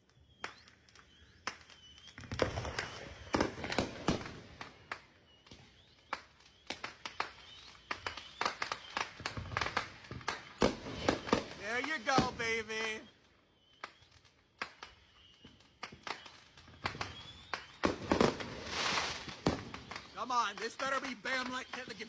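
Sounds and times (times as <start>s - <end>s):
fireworks banging and crackling: 0.2s - 22.0s.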